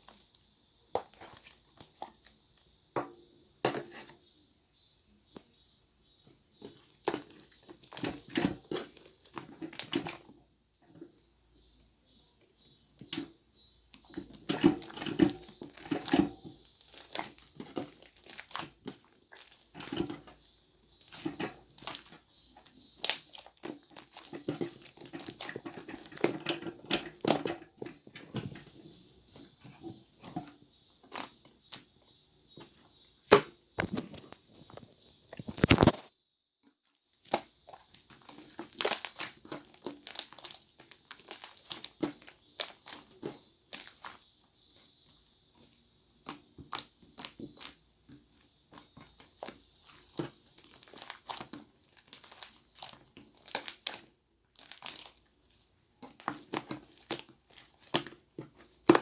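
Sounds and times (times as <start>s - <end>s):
slime crackling and popping: 6.7s - 10.3s, 14.0s - 20.2s, 20.9s - 26.6s, 37.2s - 44.2s, 46.2s - 47.8s, 48.7s - 55.2s, 56.0s - 59.0s.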